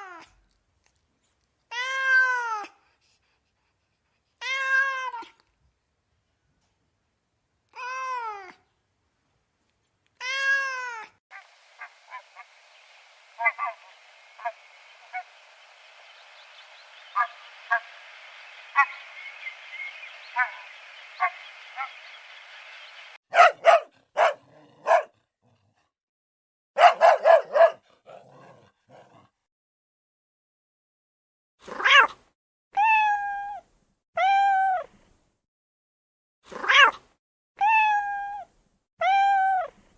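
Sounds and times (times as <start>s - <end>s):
faint hiss: 11.3s - 23.2s
short clipped animal calls: 11.3s - 23.2s.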